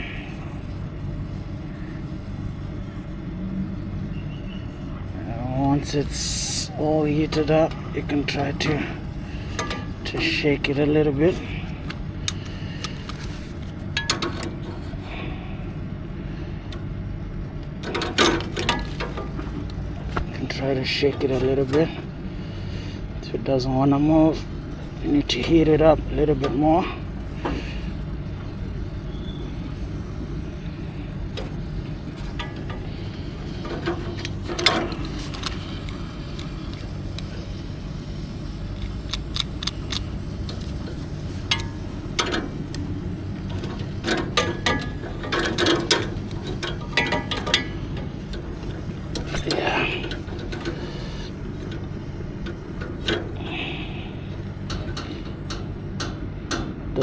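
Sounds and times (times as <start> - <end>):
brazing torch flame burning: 0.0 - 57.0
wrench clicking on metal pipe: 38.8 - 40.7, 41.5 - 42.9, 43.5 - 50.8, 54.6 - 56.8.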